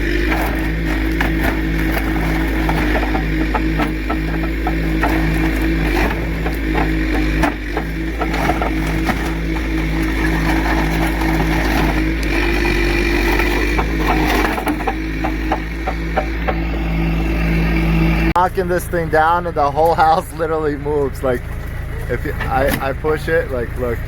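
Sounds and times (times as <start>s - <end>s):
structure knocking and cracking: 0.0s - 18.2s
heavy equipment engine running: 0.0s - 24.0s.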